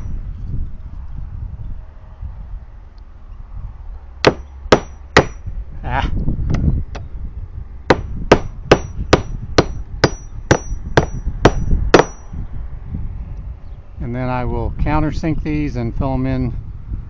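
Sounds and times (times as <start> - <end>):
hammer driving nails: 4.2 - 5.4, 7.9 - 12.2.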